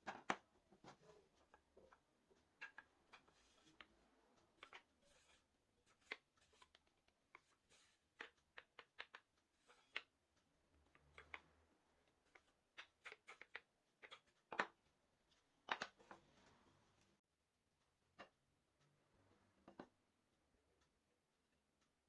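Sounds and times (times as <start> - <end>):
wood pieces clicking and tapping: 8.2 - 10.1.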